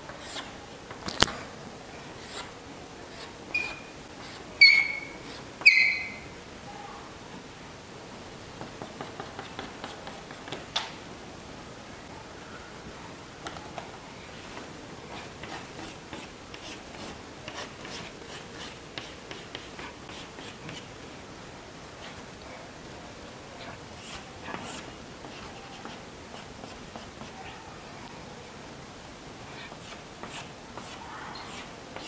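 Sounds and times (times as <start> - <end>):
chalk scratching on blackboard: 0.1 - 0.5, 2.2 - 6.1, 8.6 - 10.6, 15.1 - 20.9, 23.6 - 27.6, 29.6 - 32.0
chalk knocking on blackboard: 8.6 - 10.6, 29.7 - 31.7.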